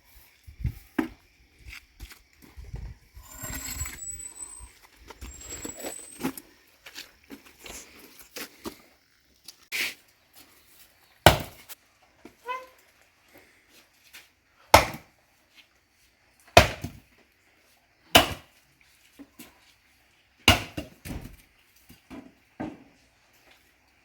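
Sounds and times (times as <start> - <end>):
firewood knocking: 20.5 - 21.3.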